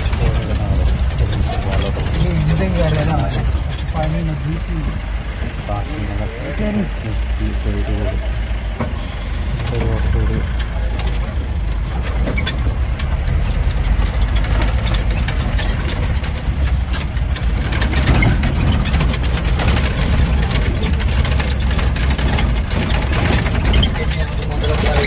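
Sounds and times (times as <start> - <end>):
engine rumbling: 0.0 - 25.0
knocks and rattles: 0.0 - 25.0.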